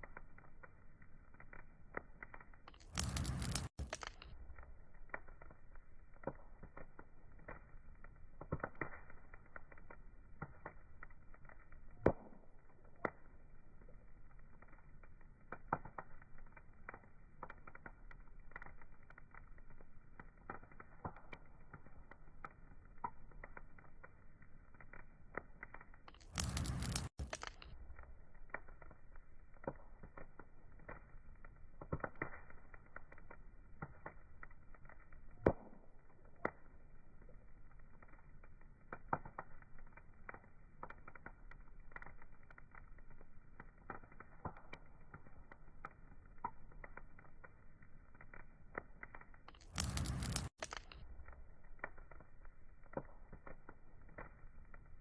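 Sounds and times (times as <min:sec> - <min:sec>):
wood fire crackling and popping: 0:00.0 - 0:55.0.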